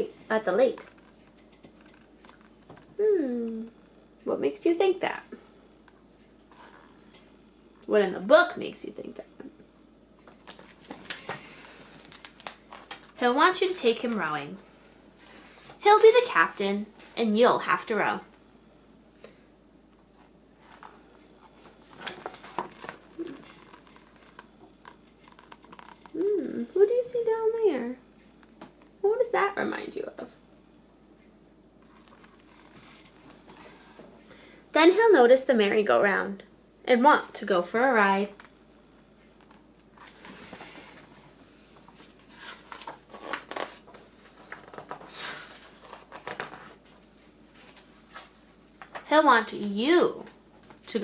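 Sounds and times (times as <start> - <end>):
book pages rustling and turning: 0.6 - 2.9, 10.2 - 13.2, 20.2 - 26.2, 31.8 - 34.1, 39.4 - 50.9
paper page rustling: 41.8 - 49.0.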